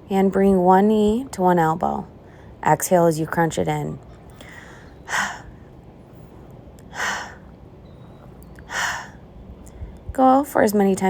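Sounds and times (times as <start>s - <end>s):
woman exhaling forcefully: 6.9s - 7.4s, 8.7s - 9.2s.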